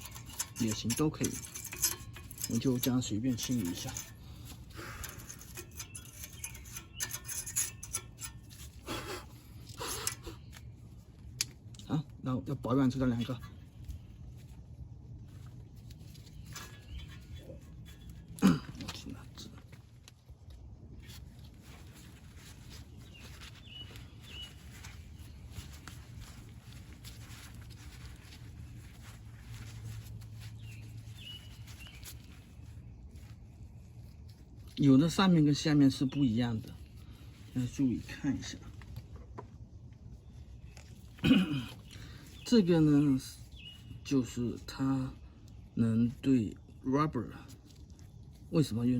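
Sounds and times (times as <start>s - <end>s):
bird chirping: 0.0s - 8.6s, 15.2s - 19.6s, 21.8s - 26.8s, 28.2s - 34.2s, 40.1s - 46.9s
rough rubbing strokes: 0.0s - 10.7s, 21.0s - 34.7s
clicks and scraping of brake parts: 0.0s - 11.9s, 12.8s - 42.5s
low steady hum: 0.0s - 48.9s.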